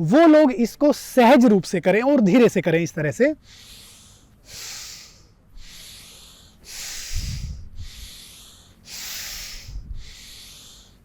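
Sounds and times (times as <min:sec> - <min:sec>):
forceful nasal breaths: 0:03.4 - 0:11.0.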